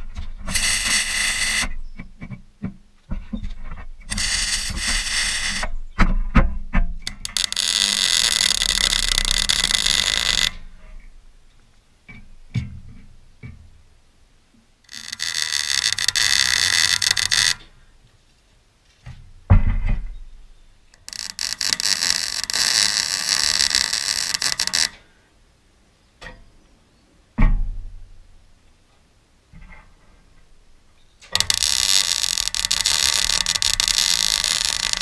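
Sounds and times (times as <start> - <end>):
heavy thump: 19.4 - 20.4, 27.4 - 28.0.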